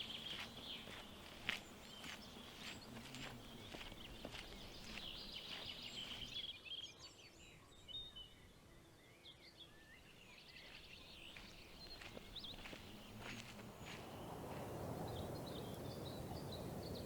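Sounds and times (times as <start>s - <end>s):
footsteps on a woodland trail: 0.0s - 6.7s, 10.1s - 15.6s
birds singing and chirping: 0.0s - 17.0s.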